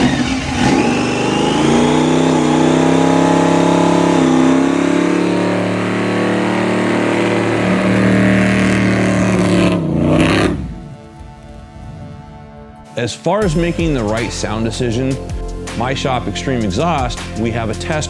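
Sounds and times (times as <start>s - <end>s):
car engine accelerating: 0.0s - 12.1s.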